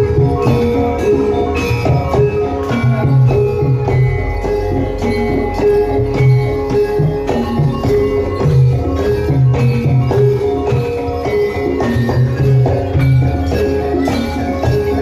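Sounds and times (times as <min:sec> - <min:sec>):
metal keyed instruments and gongs: 0:00.0 - 0:15.0
steady drum beats: 0:00.0 - 0:15.0.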